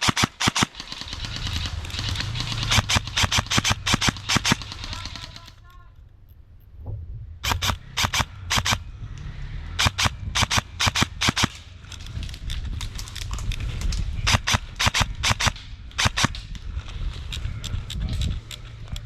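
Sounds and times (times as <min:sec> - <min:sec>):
airsoft guns firing: 0:00.0 - 0:05.7, 0:07.4 - 0:08.9, 0:09.7 - 0:12.1, 0:14.2 - 0:16.6
low rumble: 0:00.8 - 0:19.0.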